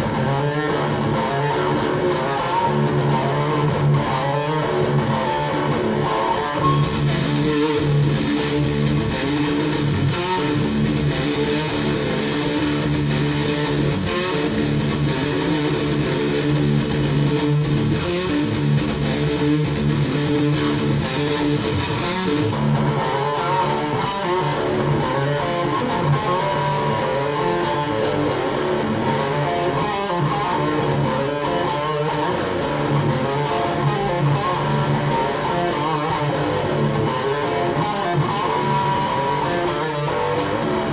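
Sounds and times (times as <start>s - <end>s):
background music with guitars: 0.0s - 40.9s.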